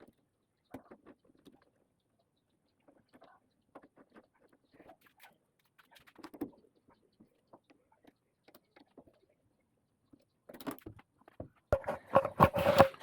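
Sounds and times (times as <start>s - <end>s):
knocks and clatter of parts: 10.5s - 13.0s.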